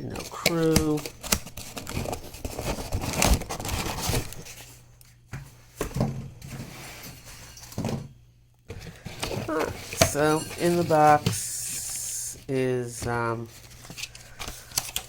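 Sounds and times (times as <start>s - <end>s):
cardboard box rustling and scraping: 1.5s - 4.8s, 5.9s - 8.0s, 8.9s - 11.4s.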